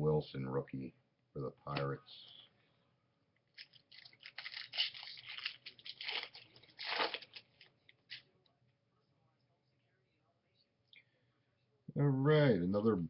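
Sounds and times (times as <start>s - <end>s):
wrapper crinkling: 3.5s - 8.2s.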